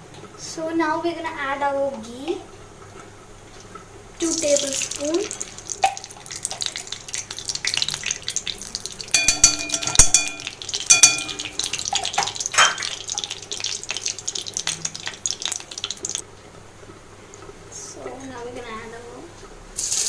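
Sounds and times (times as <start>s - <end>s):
ringing spoon clink: 9.1s - 11.6s.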